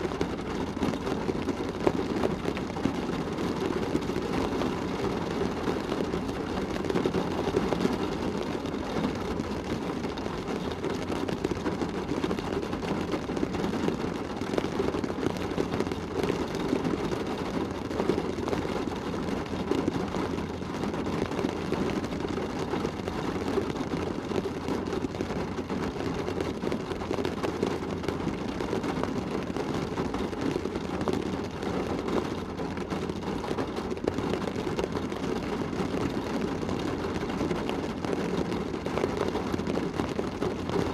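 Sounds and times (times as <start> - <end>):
rain drumming on car roof: 0.0 - 40.9.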